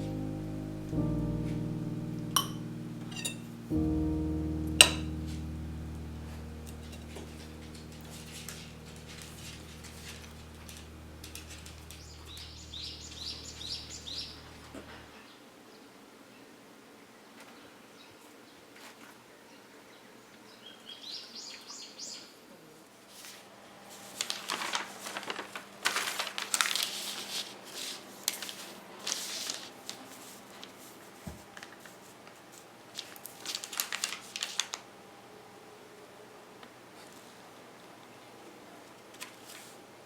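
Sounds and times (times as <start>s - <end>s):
crinkling handling noise: 24.1s - 30.8s, 31.4s - 34.8s.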